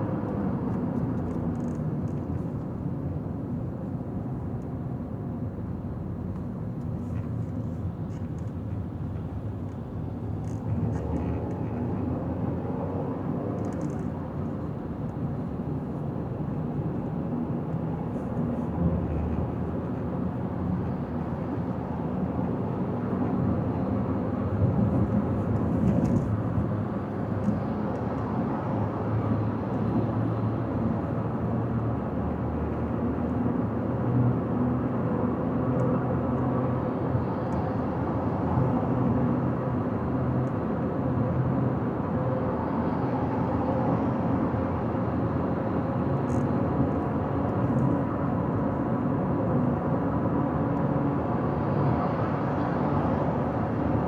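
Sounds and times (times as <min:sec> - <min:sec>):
car tyre and engine rumble: 0:00.4 - 0:40.6.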